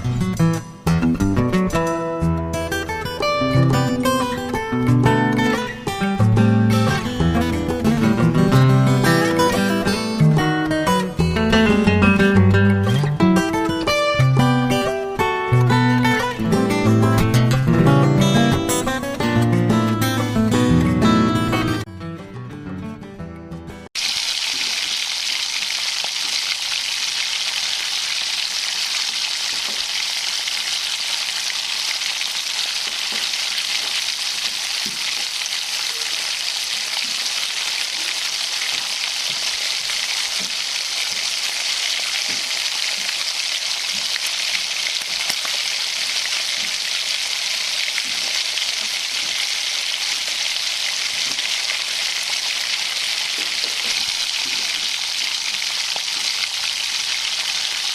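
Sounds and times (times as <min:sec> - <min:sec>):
food frying in hot oil: 0:24.0 - 0:57.9.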